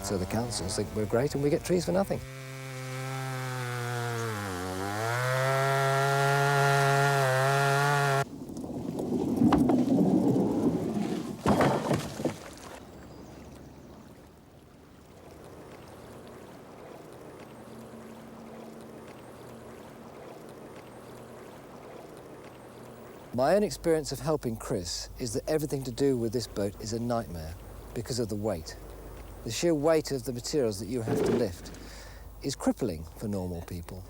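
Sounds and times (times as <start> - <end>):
chainsaw cutting wood: 0.0 - 8.2, 31.0 - 32.0
rumbling: 8.2 - 12.4, 30.8 - 32.2.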